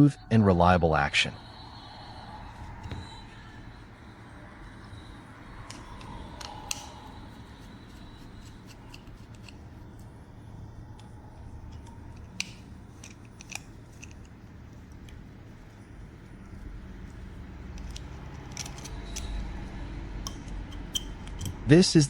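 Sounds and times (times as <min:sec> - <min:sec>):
faint low hum: 0:00.0 - 0:22.0
knife parts clicking: 0:04.7 - 0:15.9, 0:16.5 - 0:21.6.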